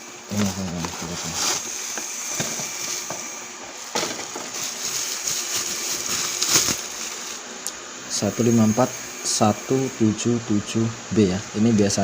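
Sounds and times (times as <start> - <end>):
transformer handled on workbench: 2.0 - 4.6.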